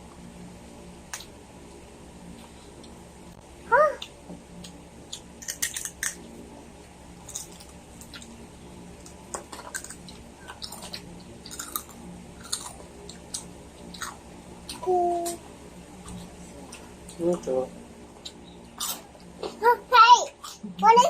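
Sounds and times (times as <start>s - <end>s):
crunchy chewing: 4.0s - 6.3s, 7.2s - 8.4s, 9.0s - 14.9s, 18.2s - 19.6s.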